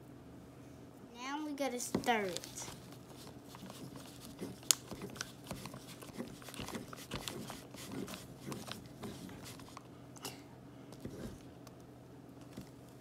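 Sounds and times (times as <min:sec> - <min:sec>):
spoon stirring slime: 0:01.9 - 0:09.8.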